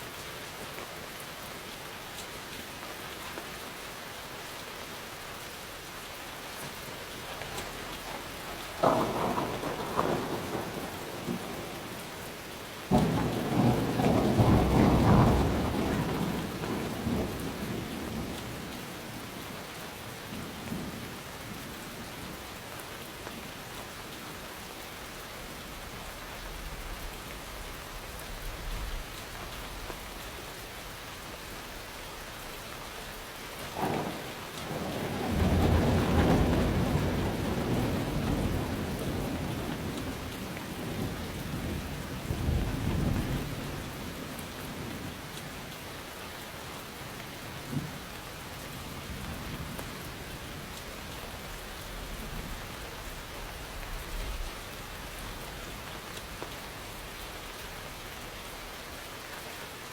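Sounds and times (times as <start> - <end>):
steady rain falling: 0.0 - 59.9
thunder crack and rumble: 7.2 - 19.6, 33.7 - 45.6, 47.5 - 50.6.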